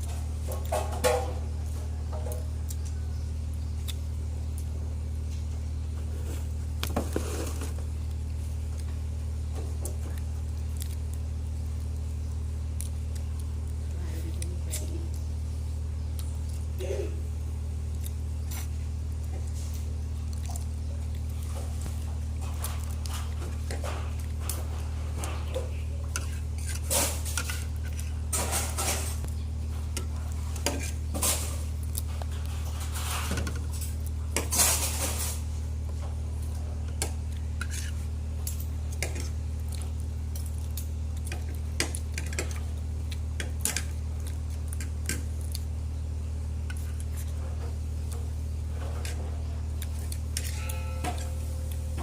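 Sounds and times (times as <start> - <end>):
steady low hum: 0.0 - 52.0
spoon and dishes clinking: 50.4 - 52.0.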